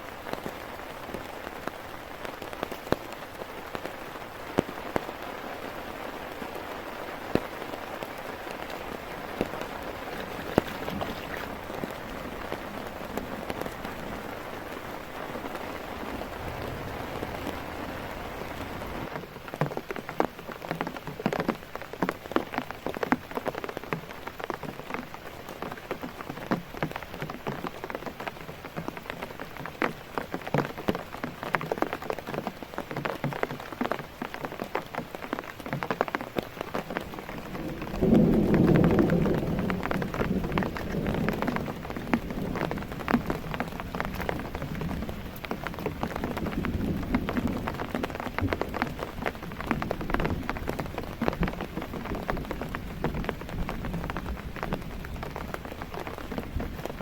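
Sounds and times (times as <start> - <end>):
heavy rain hiss: 0.0 - 19.5, 33.6 - 57.0
large raindrops hitting surface: 0.0 - 57.0.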